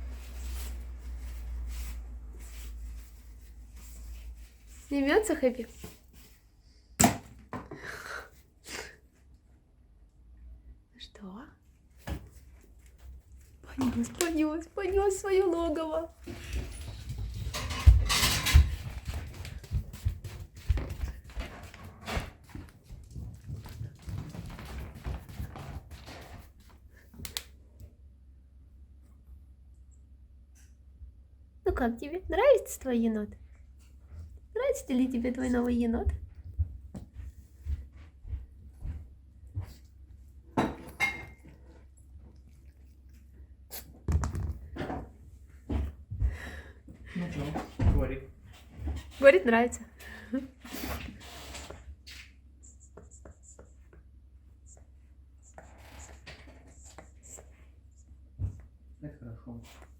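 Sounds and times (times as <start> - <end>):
rustling: 0.0 - 6.5
knocks and rustles: 16.2 - 26.8.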